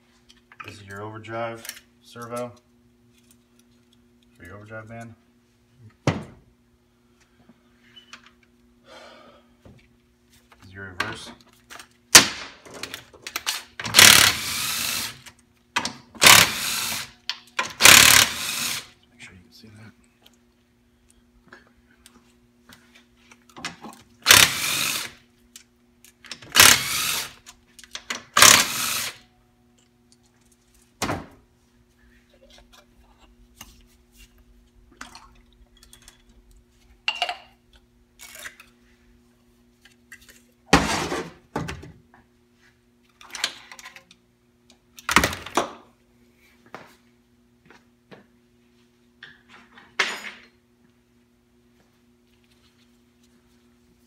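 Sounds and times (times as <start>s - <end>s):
steady low hum: 13.2s - 40.7s.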